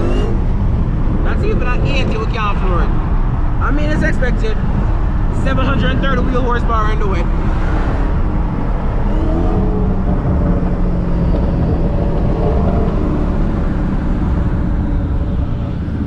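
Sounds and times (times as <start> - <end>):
car engine revving hard: 0.0 - 2.4, 7.2 - 16.0.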